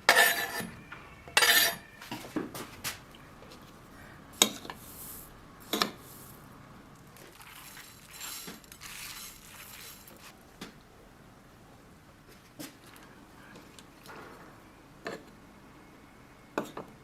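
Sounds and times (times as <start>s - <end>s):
kitchenware clinking: 0.0s - 2.4s, 5.6s - 6.1s
soft hissing noise: 2.6s - 10.6s.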